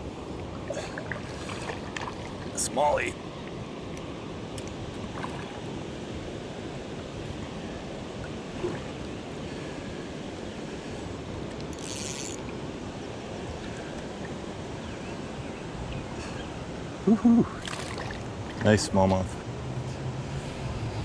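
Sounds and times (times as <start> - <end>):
river water flowing: 0.0 - 21.0.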